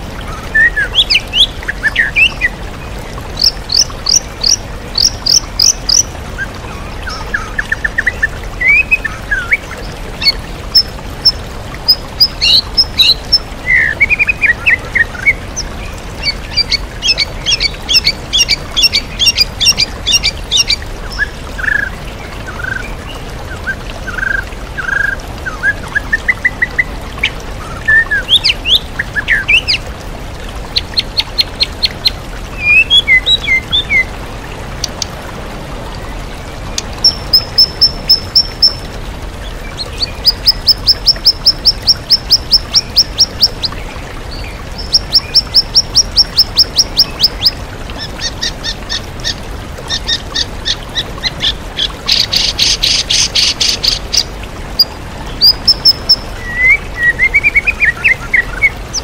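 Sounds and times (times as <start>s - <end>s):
waterfall rushing: 0.0s - 59.0s
songbird singing trills: 36.8s - 38.9s, 55.4s - 58.8s.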